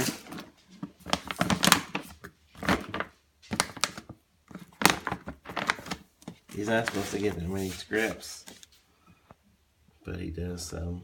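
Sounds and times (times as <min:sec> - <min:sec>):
plastic bag crinkling: 0:00.0 - 0:08.6.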